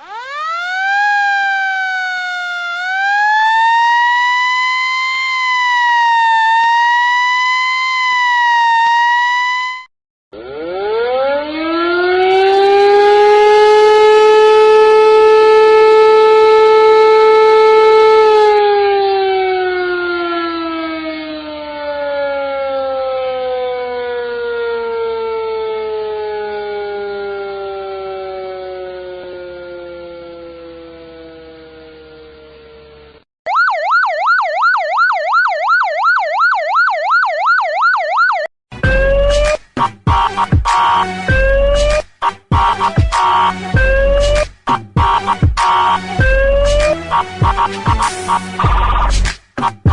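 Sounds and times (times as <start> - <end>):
air-raid siren wailing: 0.0 - 49.2
loud rising tone effect: 38.2 - 49.9.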